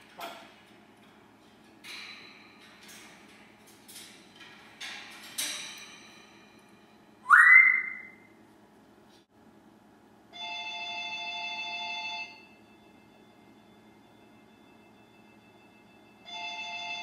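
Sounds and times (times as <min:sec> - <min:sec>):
parrot whistling: 0:07.2 - 0:08.3.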